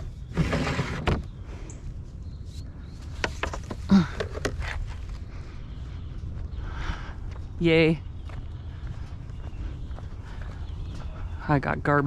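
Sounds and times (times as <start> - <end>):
wooden board scraping: 0.3 - 1.3.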